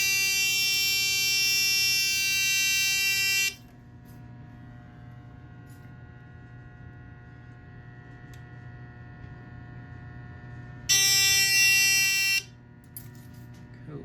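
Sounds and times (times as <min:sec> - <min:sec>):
fire alarm horn buzzing: 0:00.0 - 0:03.7, 0:10.9 - 0:12.8.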